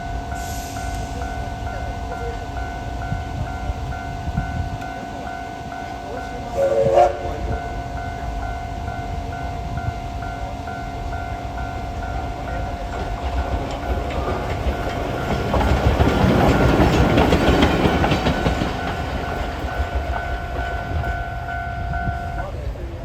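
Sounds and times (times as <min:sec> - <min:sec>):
level crossing bell ringing: 0:00.0 - 0:22.6
steam locomotive rolling past: 0:00.0 - 0:23.0
train wheels clicking over rails: 0:11.6 - 0:22.1.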